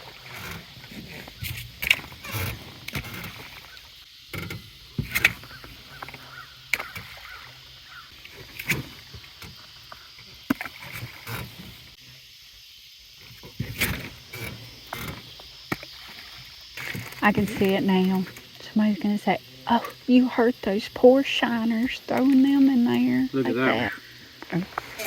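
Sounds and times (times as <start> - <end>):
knocks and clunks in a boat: 0.0 - 7.3, 16.8 - 19.0.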